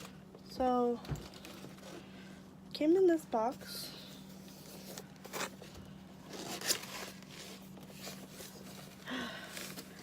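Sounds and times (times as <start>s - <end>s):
packaging rustling: 4.5s - 10.0s.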